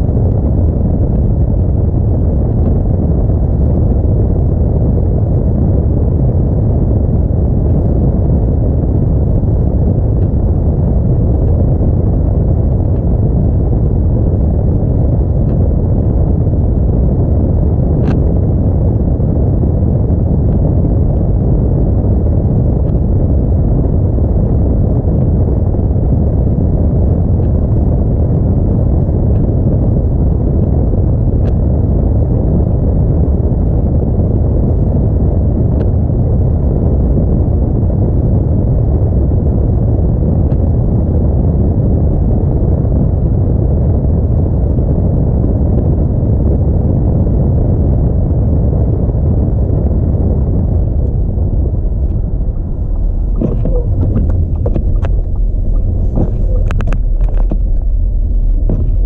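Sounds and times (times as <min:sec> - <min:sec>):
car driving on snowy road: 0:49.8 - 0:59.0.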